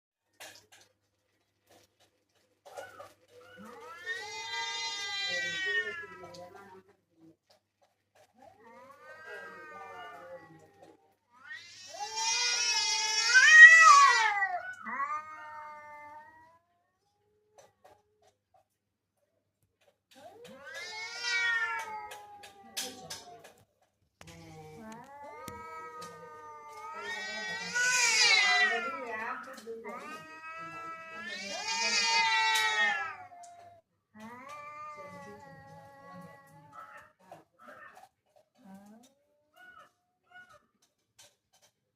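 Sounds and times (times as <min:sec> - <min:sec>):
cat meowing: 0:02.7 - 0:06.6, 0:08.6 - 0:16.9, 0:20.3 - 0:23.5, 0:24.8 - 0:38.0
pet animal drawn-out calls: 0:25.0 - 0:33.2, 0:39.5 - 0:40.8.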